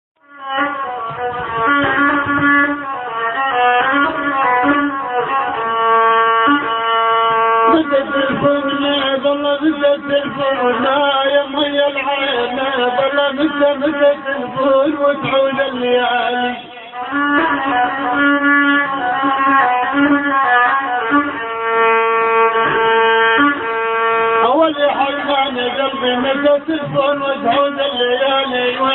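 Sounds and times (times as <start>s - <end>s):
strings playing a melody: 0.2s - 28.9s
person singing: 7.7s - 20.2s, 24.4s - 28.9s.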